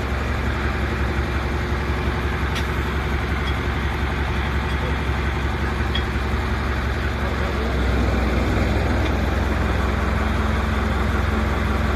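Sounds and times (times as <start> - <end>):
low mechanical hum: 0.0 - 11.9.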